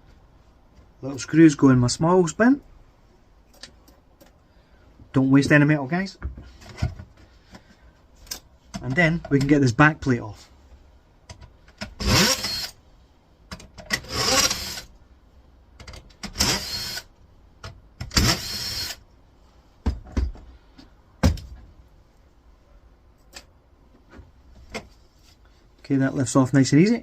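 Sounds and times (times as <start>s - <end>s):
power driver whirring: 12.0s - 12.8s, 14.0s - 14.9s.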